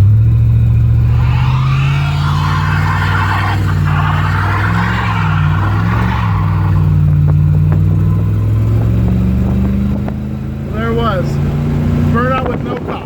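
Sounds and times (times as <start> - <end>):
car engine at high throttle: 0.0 - 13.0
rough tyre noise: 0.0 - 13.0.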